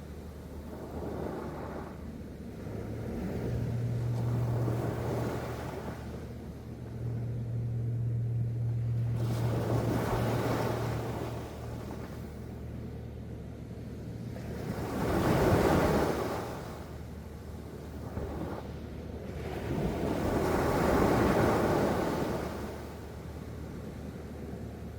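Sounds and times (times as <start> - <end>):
sea waves washing in: 0.0 - 7.9, 8.7 - 13.0, 13.8 - 24.9
low engine hum: 0.0 - 24.9.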